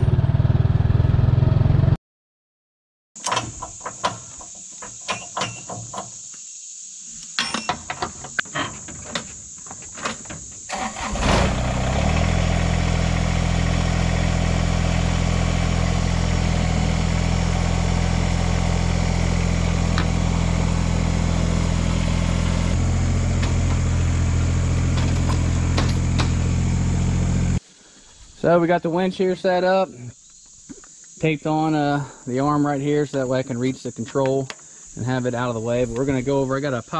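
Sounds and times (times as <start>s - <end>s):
engine starting and idling: 10.6s - 27.6s.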